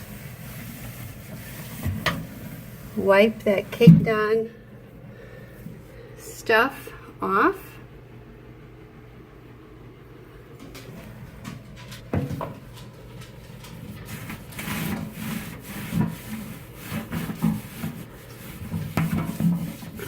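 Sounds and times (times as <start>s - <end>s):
cloth scrubbing a tray: 0.0s - 4.3s, 13.5s - 20.0s.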